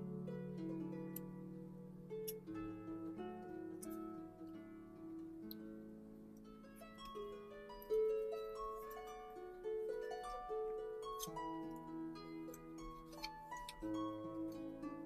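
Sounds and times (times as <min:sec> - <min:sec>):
plucked harp-like melody: 0:00.0 - 0:15.0.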